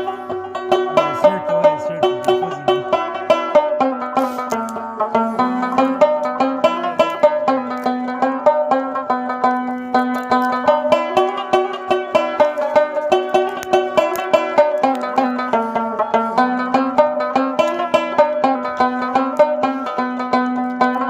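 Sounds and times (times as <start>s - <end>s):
plucked string notes: 0.0s - 21.0s
held low note: 0.5s - 3.3s.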